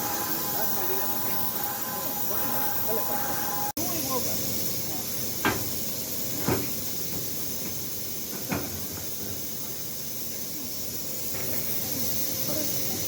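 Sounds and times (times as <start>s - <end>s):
steady hiss: 0.0s - 13.0s.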